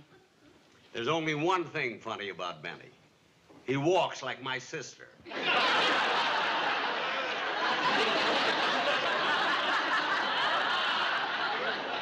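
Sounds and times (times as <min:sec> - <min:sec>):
studio audience laughing: 0:05.3 - 0:12.0.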